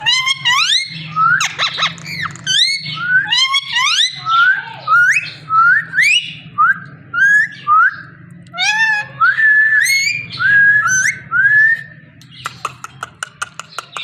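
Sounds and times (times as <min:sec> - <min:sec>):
parakeet whistling: 0:00.0 - 0:11.9.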